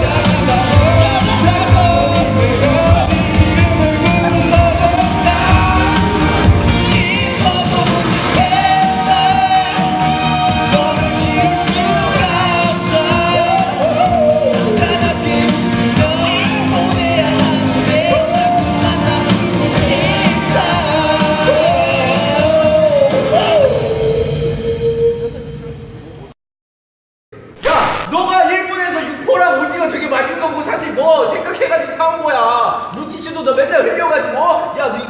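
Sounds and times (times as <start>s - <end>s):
pop band with steady beat: 0.0s - 23.5s
person singing: 0.0s - 23.7s.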